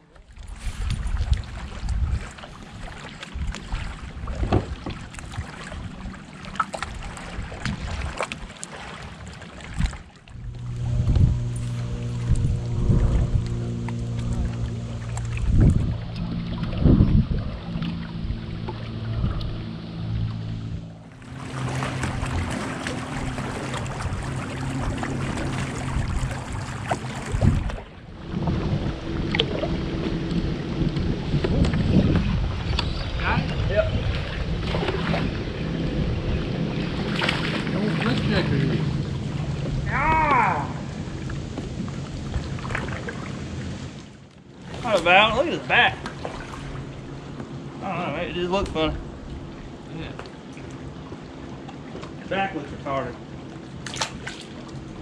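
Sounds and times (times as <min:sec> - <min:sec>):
water splashing against kayak: 0:00.0 - 0:55.0
wind buffeting microphone: 0:00.4 - 0:08.6, 0:09.5 - 0:43.8
steady low hum: 0:09.7 - 0:55.0.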